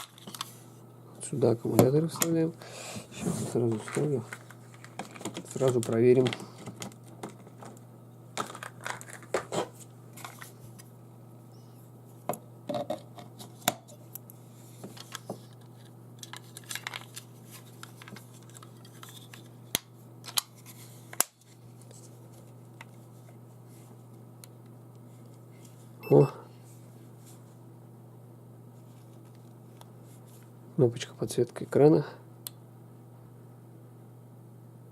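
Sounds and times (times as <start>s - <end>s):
faint steady hum: 0.0s - 34.9s
clicks and rattles of handling: 3.7s - 7.8s, 14.8s - 19.5s.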